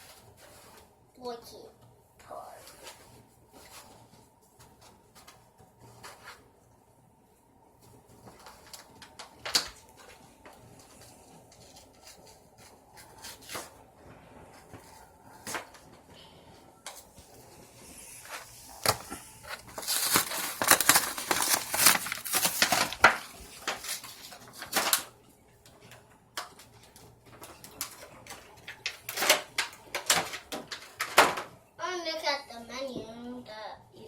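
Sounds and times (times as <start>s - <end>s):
packaging crackling and rustling: 7.9s - 13.9s, 16.9s - 31.5s.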